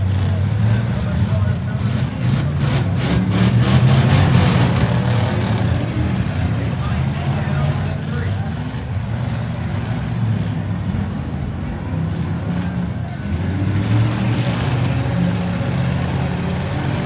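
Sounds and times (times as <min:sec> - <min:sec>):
car engines revving: 0:00.0 - 0:17.0.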